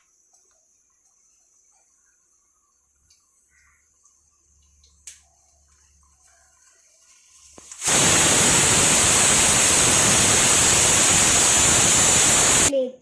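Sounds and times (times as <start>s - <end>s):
loud steady hiss: 7.5s - 12.7s.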